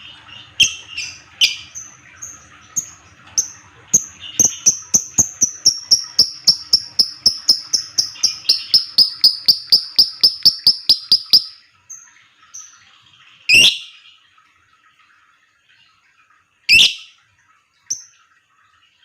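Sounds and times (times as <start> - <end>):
lovebird high chirps: 0.6 - 11.6, 13.5 - 13.9, 16.7 - 17.0
lovebird harsh call: 5.3 - 11.6.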